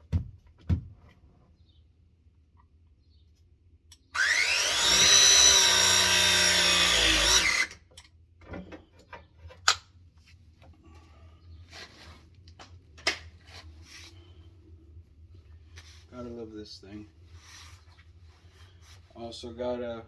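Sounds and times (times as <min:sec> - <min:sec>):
press tool motor whining: 0:04.2 - 0:07.8.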